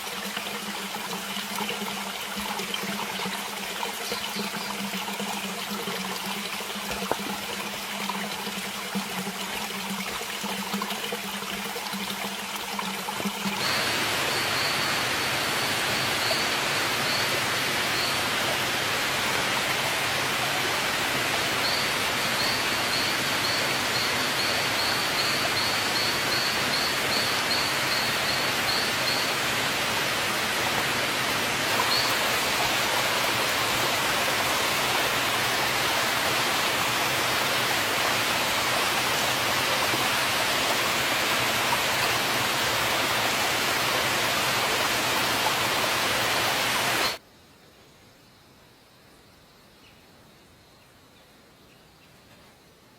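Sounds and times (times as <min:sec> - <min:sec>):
flowing water rushing: 0:00.0 - 0:47.2.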